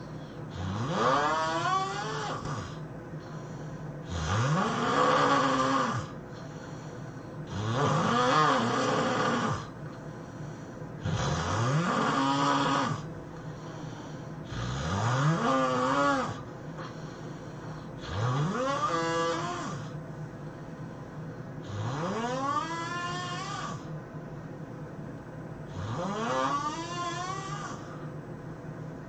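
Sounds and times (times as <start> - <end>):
person snoring heavily: 0.5 - 3.4, 4.0 - 6.8, 7.4 - 9.8, 11.0 - 20.0, 21.6 - 23.9, 25.7 - 28.0.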